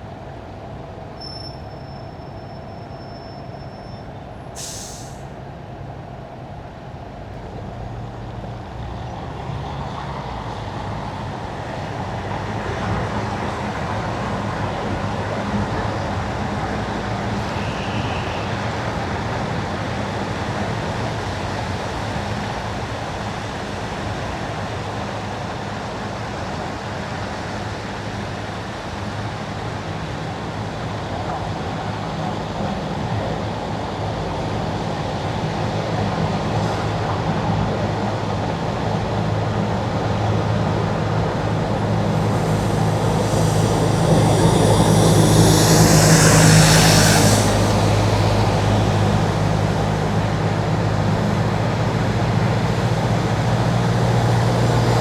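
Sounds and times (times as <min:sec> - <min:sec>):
brief sharp hiss: 0:04.6 - 0:05.4, 0:41.6 - 0:50.9
tyre hiss on wet road: 0:04.6 - 0:05.4, 0:41.4 - 0:55.0
low engine hum: 0:39.8 - 0:55.0.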